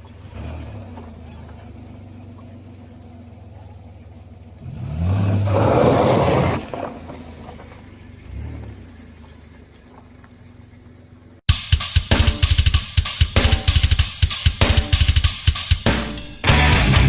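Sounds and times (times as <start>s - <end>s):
car engine revving: 0.0s - 17.0s
drum-kit music: 11.5s - 17.0s.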